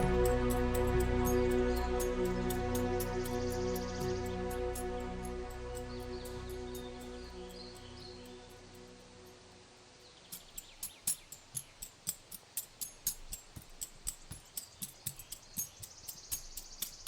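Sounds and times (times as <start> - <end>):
woodpecker pecking at wood: 10.4 - 17.0.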